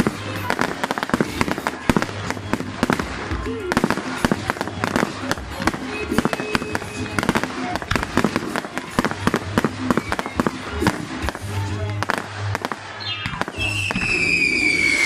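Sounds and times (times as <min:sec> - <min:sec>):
fireworks bangs and crackles: 0:00.0 - 0:15.0
music: 0:00.0 - 0:15.0
falling firework whistle: 0:09.8 - 0:10.6, 0:13.0 - 0:15.0.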